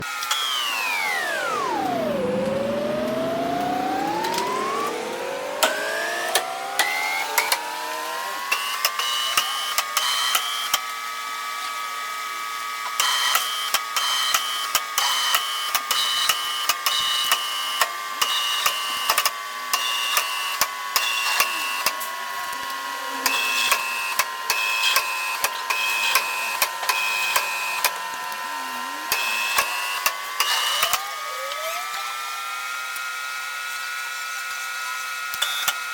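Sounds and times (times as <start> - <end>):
metalworking machine tool running: 0.0 - 8.8.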